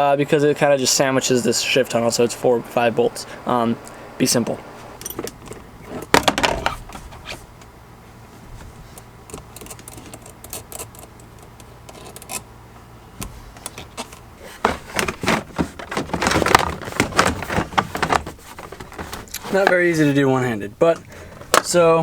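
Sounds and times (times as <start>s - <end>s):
car interior parts clicking and rattling: 5.0s - 7.8s, 8.4s - 12.5s, 13.2s - 22.0s.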